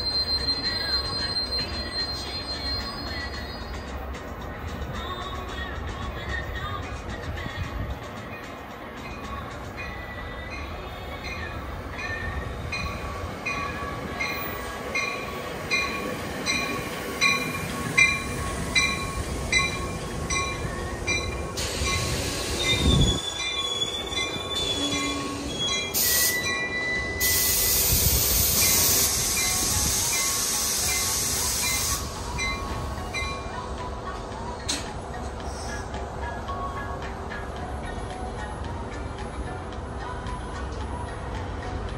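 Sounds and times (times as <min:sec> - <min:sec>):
high wheel squeal: 0:00.0 - 0:04.0, 0:12.0 - 0:33.5, 0:35.4 - 0:36.0
train bell ringing: 0:00.0 - 0:05.6, 0:08.3 - 0:41.9
air hiss: 0:21.5 - 0:23.3, 0:25.3 - 0:26.6, 0:27.2 - 0:32.9.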